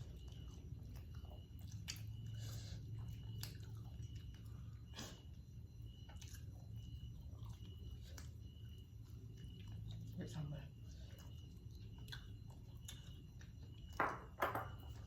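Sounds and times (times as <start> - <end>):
person chewing food: 0.0 - 10.2, 10.8 - 14.0.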